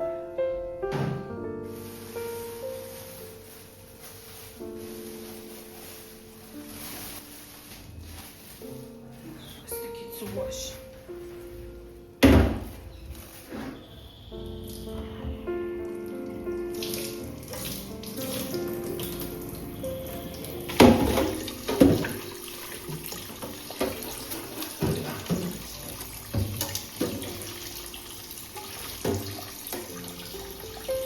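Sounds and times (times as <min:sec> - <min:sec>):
soft background music: 0:00.0 - 0:31.0
tap water running into sink: 0:16.3 - 0:31.0.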